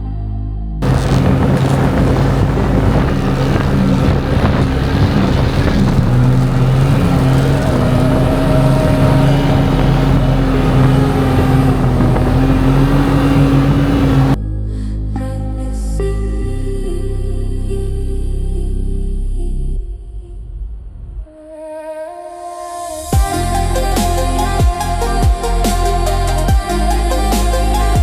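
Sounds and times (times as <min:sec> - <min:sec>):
off-road vehicle engine revving hard: 0:00.8 - 0:14.4.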